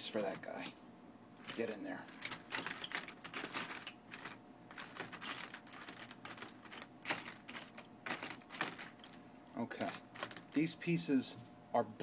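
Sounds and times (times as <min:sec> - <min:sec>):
small steel parts clinking: 0:01.4 - 0:10.8.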